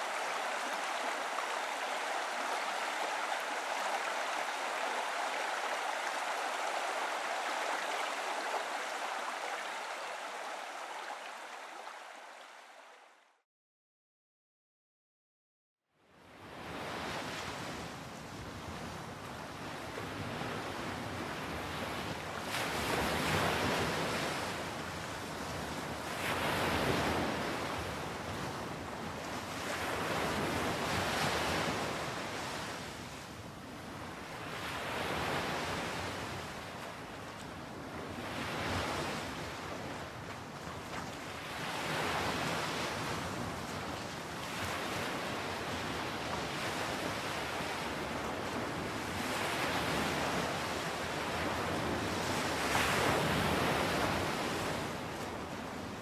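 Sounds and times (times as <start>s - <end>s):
ocean waves washing in: 0.0s - 13.0s.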